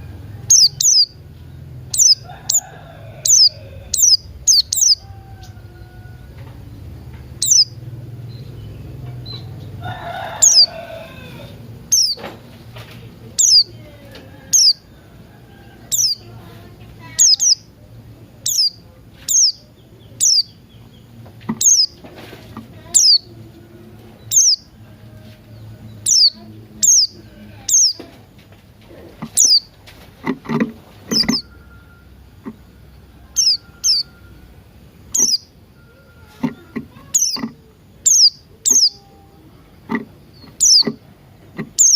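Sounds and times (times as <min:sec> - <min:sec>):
lower rough bird calls: 0:01.9 - 0:05.6, 0:07.3 - 0:07.8, 0:10.3 - 0:12.2, 0:15.9 - 0:16.2, 0:31.1 - 0:31.6, 0:35.1 - 0:35.5, 0:39.9 - 0:41.0.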